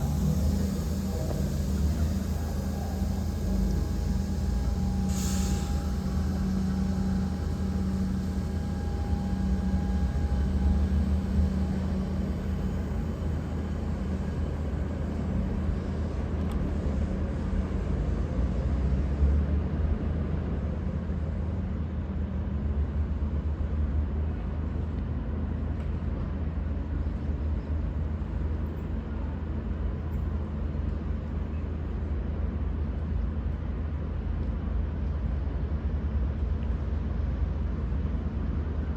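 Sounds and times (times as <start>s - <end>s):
brief hiss: 0.0s - 10.6s
diesel train rumble: 0.0s - 38.9s.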